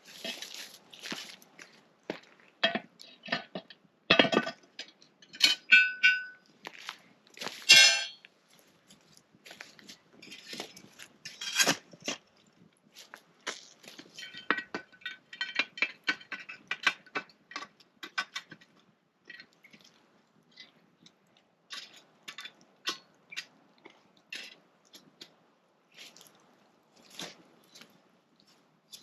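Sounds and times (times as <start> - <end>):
metal cooking gear clinking: 7.6 - 8.2.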